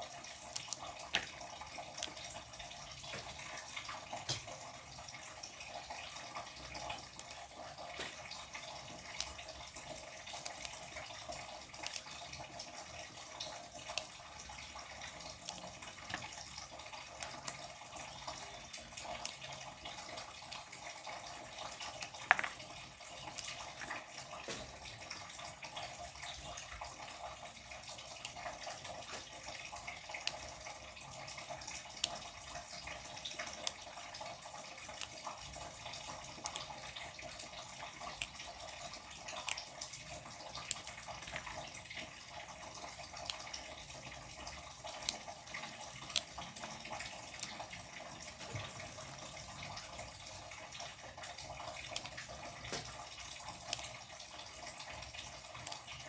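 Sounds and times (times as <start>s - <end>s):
tap water running into sink: 0.0s - 56.0s
small clicks: 11.8s - 12.2s.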